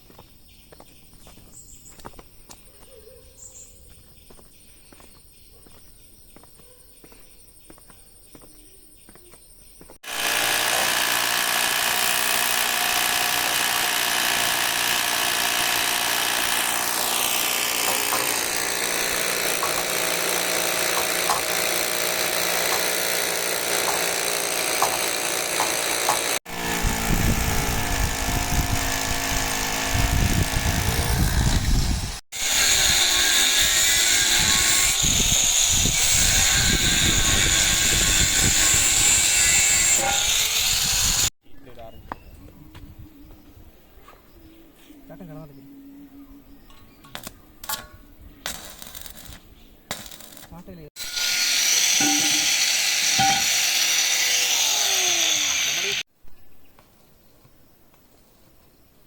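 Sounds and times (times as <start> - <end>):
power tools running: 10.0 - 41.3, 50.0 - 56.1.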